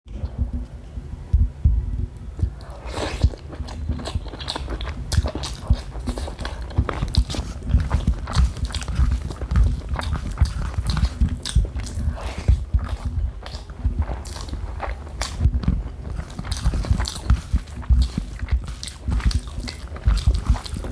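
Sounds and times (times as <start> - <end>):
person chewing crunchy food: 2.4 - 20.9.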